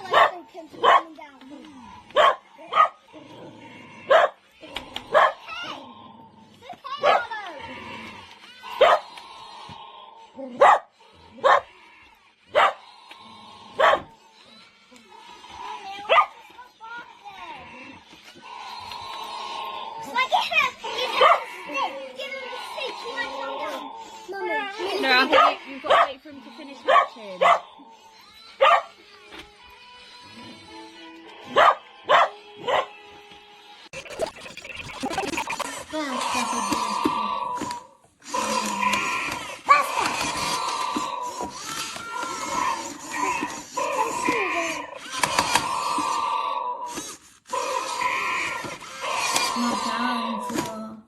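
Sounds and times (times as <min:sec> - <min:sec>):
faint steady electronic tone: 0:34.0 - 0:35.7
toy dinosaur bark-like calls: 0:46.8 - 0:50.7.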